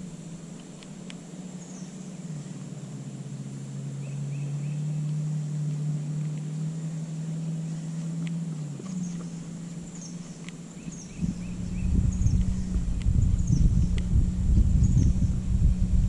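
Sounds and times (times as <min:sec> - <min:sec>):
faint clicks: 0:00.0 - 0:01.9, 0:05.0 - 0:06.6, 0:07.6 - 0:11.2
low engine hum: 0:00.0 - 0:16.0.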